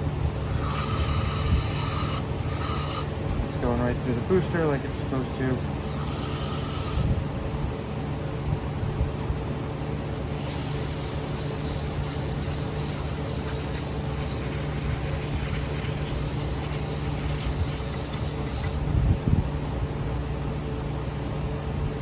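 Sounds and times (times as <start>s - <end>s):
steady low hum: 0.0s - 22.0s
hissing spray: 10.2s - 18.8s.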